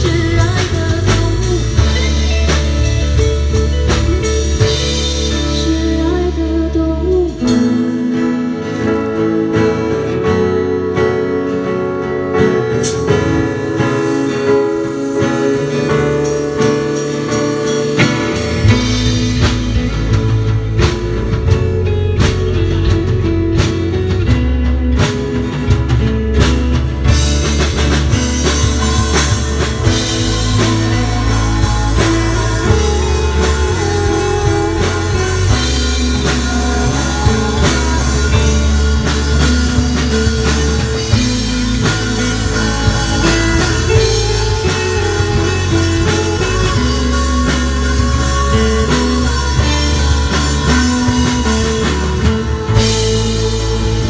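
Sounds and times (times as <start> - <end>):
person singing: 0.0 - 9.0, 27.4 - 54.0
deep bass: 0.0 - 54.0
drum kit: 0.0 - 54.0
electric guitar: 0.0 - 54.0.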